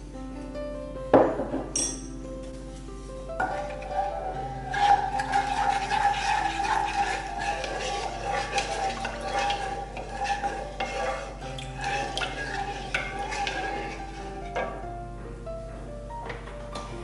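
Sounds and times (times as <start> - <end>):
spoon stirring in a bowl: 3.4 - 14.8
utensil clinking against bowl: 4.7 - 14.8.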